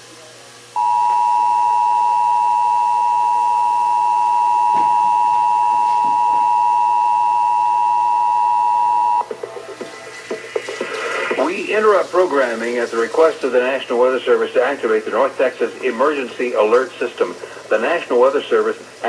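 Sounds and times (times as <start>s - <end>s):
two-tone alert tone: 0.8s - 9.3s.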